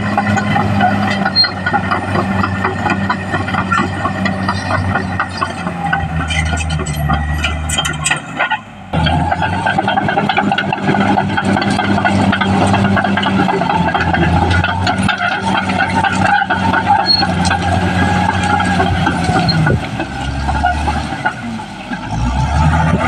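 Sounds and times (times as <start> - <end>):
bulldozer diesel engine running: 0.0 - 23.0
rattle of clicks and clanks: 0.0 - 23.0.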